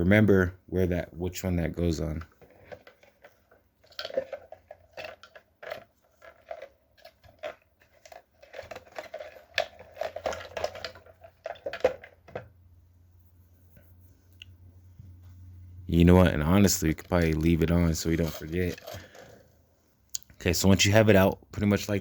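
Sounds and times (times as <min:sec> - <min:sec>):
parts clicking and scraping: 0:02.1 - 0:12.6, 0:16.1 - 0:19.6.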